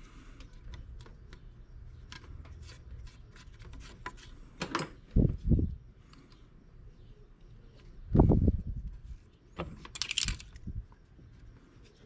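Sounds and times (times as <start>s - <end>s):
tools and parts clicking: 9.7s - 10.7s.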